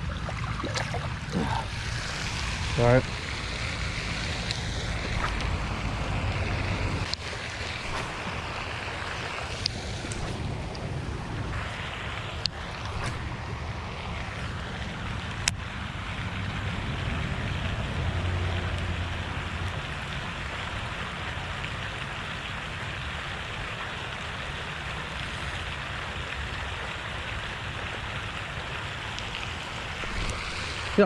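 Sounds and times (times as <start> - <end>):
wind rumble on microphone: 0.0 - 20.0
fountain water splashing: 0.0 - 31.0
sharp click: 7.8 - 10.9.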